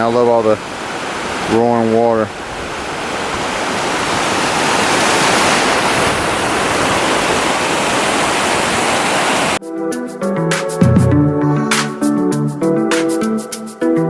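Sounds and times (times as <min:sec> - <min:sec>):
waterfall roaring: 0:00.0 - 0:09.6
music: 0:09.6 - 0:14.0.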